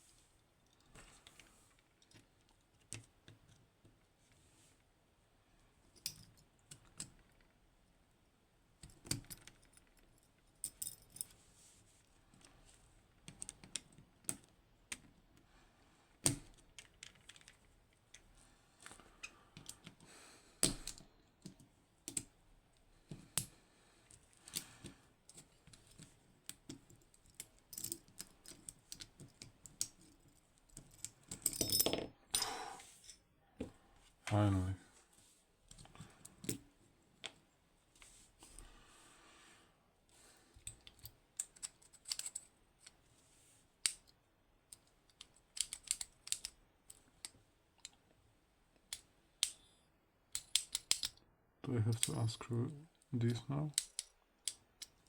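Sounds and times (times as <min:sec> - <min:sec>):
lock picking metallic clicks: 0:20.6 - 0:22.3, 0:40.6 - 0:43.0, 0:43.8 - 0:48.0, 0:48.8 - 0:51.2, 0:53.7 - 0:55.0.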